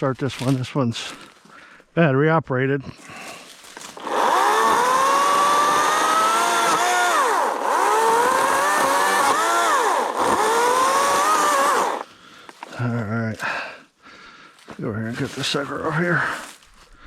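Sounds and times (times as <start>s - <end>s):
chainsaw high whine: 3.8s - 12.1s.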